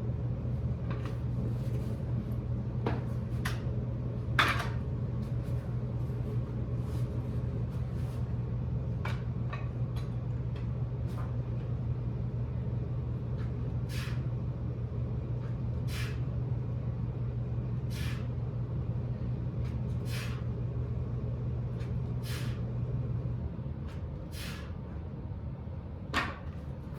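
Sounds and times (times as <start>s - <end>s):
low machine hum: 0.0s - 26.9s
person exhaling sharply: 13.9s - 14.2s, 15.9s - 16.2s, 17.9s - 18.3s, 20.1s - 20.5s, 22.2s - 22.7s, 24.3s - 24.8s.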